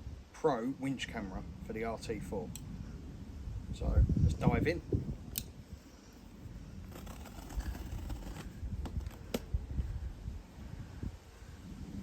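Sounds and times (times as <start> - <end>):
scraping at tape and cardboard: 6.2 - 9.5.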